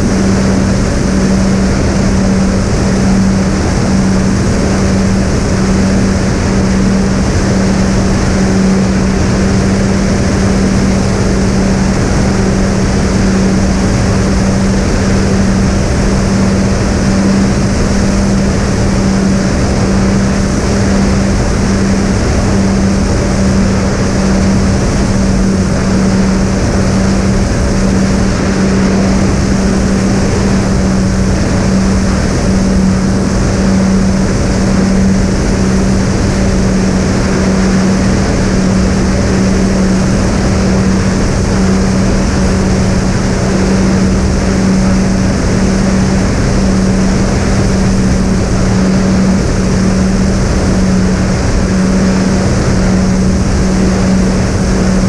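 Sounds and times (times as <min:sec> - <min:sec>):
wind noise: 0:00.0 - 0:55.0.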